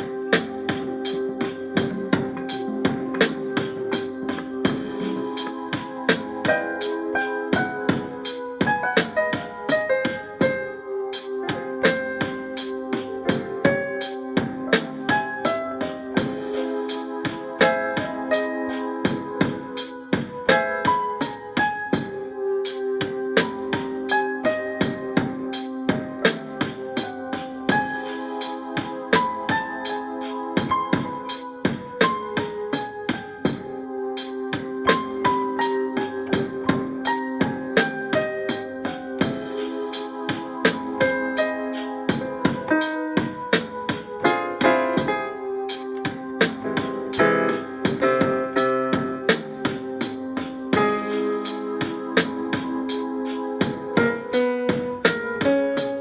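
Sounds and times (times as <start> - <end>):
drums: 0.0 - 56.0
keyboard melody: 0.0 - 56.0.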